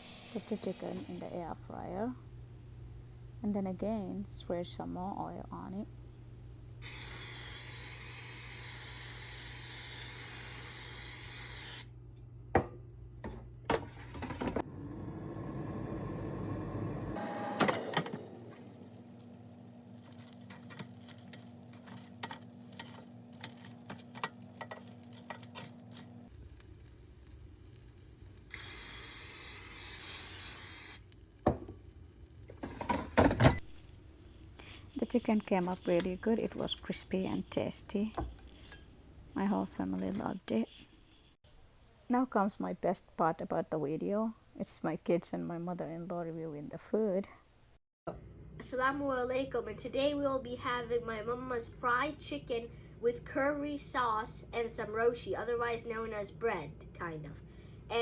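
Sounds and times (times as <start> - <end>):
cooking oil spray hissing: 0.0 - 1.6, 6.8 - 12.0, 26.3 - 32.4, 33.6 - 41.4.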